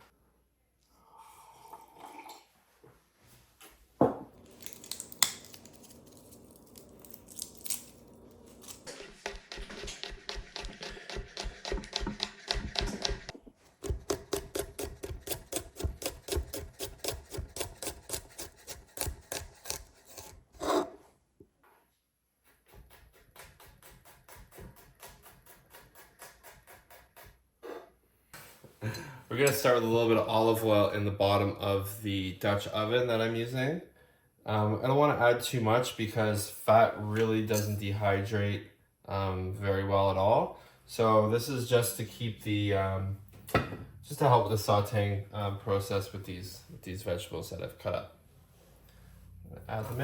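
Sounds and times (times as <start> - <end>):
knife chopping on wooden board: 9.0 - 20.8.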